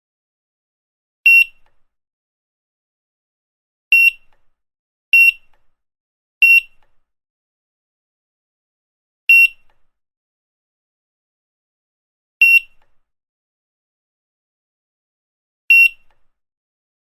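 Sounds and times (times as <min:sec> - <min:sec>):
barcode scanner beeps: 0:01.3 - 0:01.6, 0:03.9 - 0:04.3, 0:05.2 - 0:05.5, 0:06.4 - 0:06.8, 0:09.3 - 0:09.7, 0:12.4 - 0:12.8, 0:15.7 - 0:16.1.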